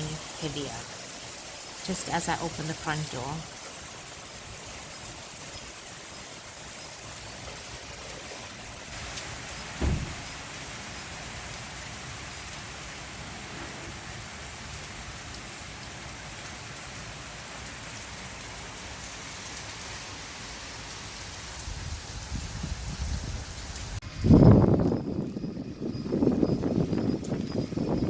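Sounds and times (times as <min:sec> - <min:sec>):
heavy rain falling: 0:00.0 - 0:24.0
wind buffeting microphone: 0:21.6 - 0:28.0.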